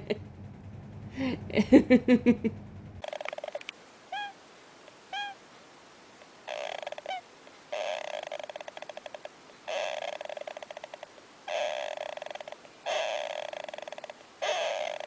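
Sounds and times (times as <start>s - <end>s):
animal squeaky calls: 3.2s - 4.4s, 5.1s - 5.4s, 6.5s - 15.0s.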